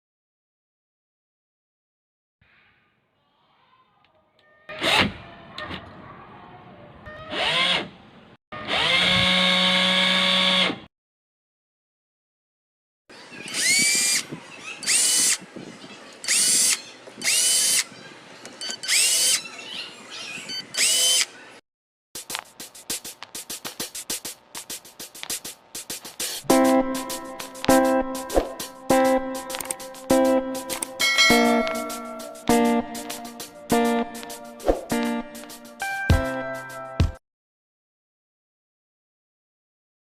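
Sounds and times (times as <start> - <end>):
cordless drill motor whining: 8.6 - 10.8, 13.4 - 15.5, 16.2 - 19.5, 20.3 - 21.4.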